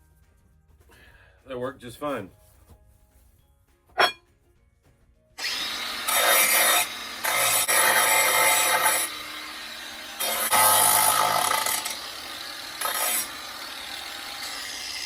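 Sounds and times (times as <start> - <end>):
power tool bursts: 5.4 - 15.0.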